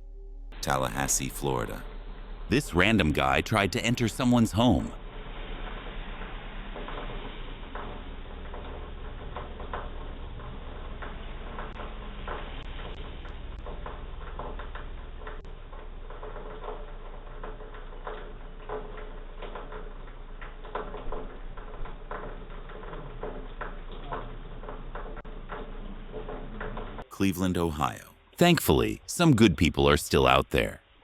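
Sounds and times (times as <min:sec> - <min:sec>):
steady low hum: 0:00.0 - 0:16.3.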